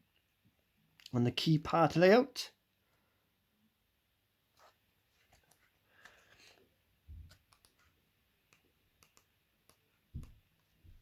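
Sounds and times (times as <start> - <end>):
soft low thumps: 10.2 - 11.0.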